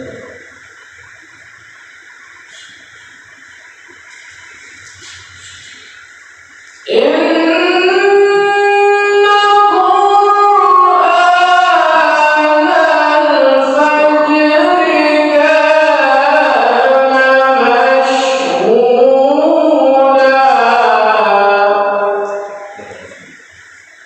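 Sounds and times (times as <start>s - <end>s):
person reciting melodically: 0.0s - 0.7s, 6.8s - 23.4s.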